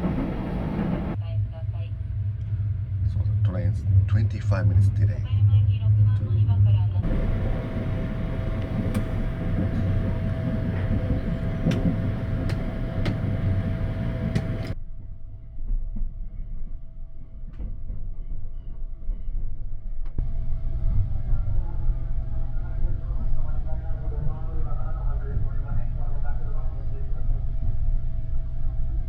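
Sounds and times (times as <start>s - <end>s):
train rumbling on rails: 0.0s - 1.2s, 6.7s - 14.8s
faint steady whine: 7.0s - 14.8s.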